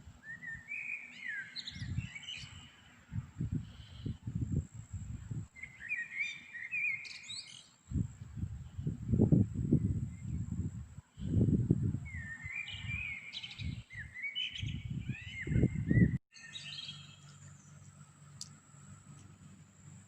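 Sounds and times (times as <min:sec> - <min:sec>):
small birds chirping: 0:00.2 - 0:20.0
low rumbling on microphone: 0:07.9 - 0:14.0, 0:14.6 - 0:16.2.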